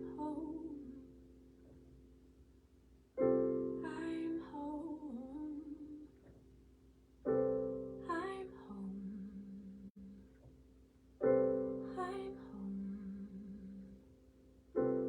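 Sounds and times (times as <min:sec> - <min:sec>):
woman singing: 0:00.0 - 0:01.1, 0:03.8 - 0:06.2, 0:08.0 - 0:10.3, 0:11.8 - 0:14.0
keyboard chords ringing: 0:03.2 - 0:05.0, 0:07.2 - 0:08.1, 0:11.2 - 0:12.4.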